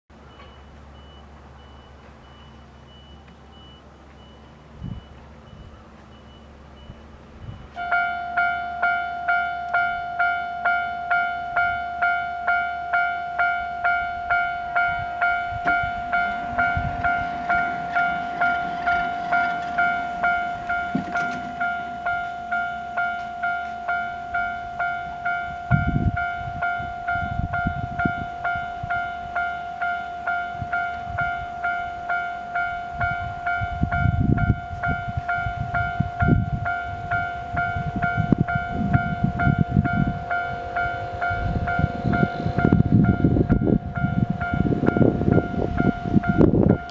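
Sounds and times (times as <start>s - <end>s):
level crossing warning bell: 0.2s - 46.9s
wind noise on microphone: 4.6s - 5.9s, 6.8s - 46.9s.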